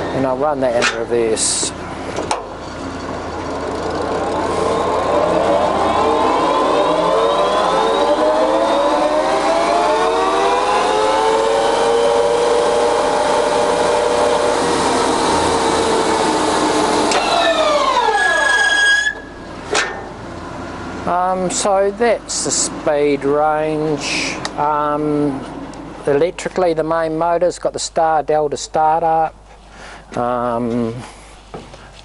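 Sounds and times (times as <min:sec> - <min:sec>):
lathe gears whirring: 0:00.0 - 0:24.4.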